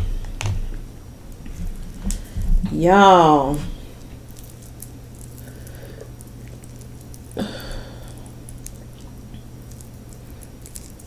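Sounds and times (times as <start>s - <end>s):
steady electrical hum: 0.0s - 11.0s
crab meat picked and chewed: 3.7s - 11.0s.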